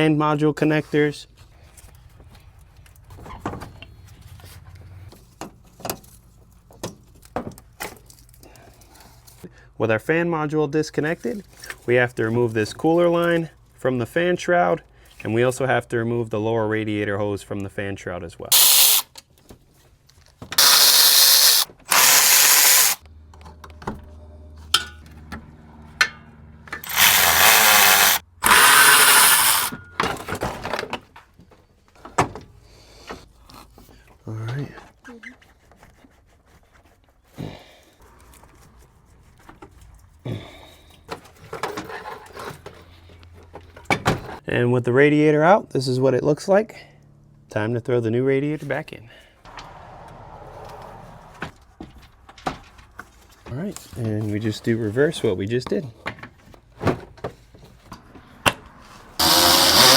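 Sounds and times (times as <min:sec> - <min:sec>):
power tool bursts: 0:18.5 - 0:19.0, 0:20.6 - 0:23.0, 0:26.8 - 0:29.8, 0:59.2 - 0:59.9.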